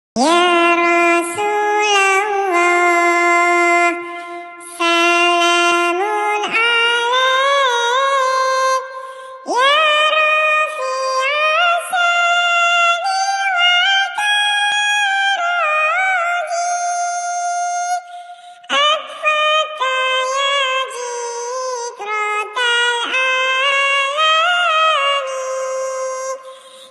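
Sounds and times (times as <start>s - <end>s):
synthetic high-pitched singing voice: 0.2s - 26.9s.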